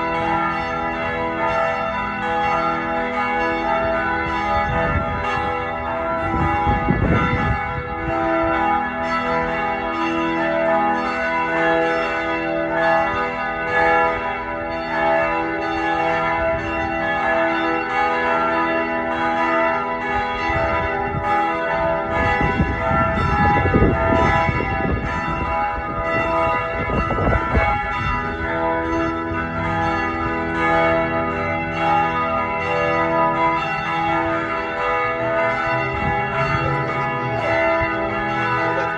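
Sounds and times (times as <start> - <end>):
church bells ringing: 0.0 - 38.9
low rumbling wind gusts: 3.7 - 9.7, 16.3 - 17.1, 19.8 - 38.9.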